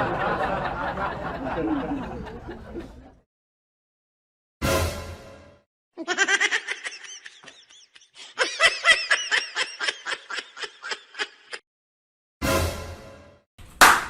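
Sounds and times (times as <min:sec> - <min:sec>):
high-pitched laughter: 0:06.0 - 0:11.6.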